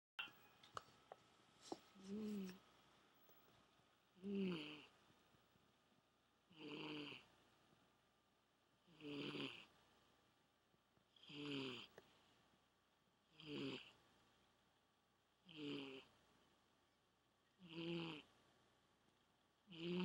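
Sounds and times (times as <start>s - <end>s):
cat snoring: 4.2s - 5.0s, 6.5s - 7.4s, 8.8s - 9.8s, 11.1s - 12.0s, 13.3s - 14.0s, 15.4s - 16.2s, 17.6s - 18.4s, 19.7s - 20.0s.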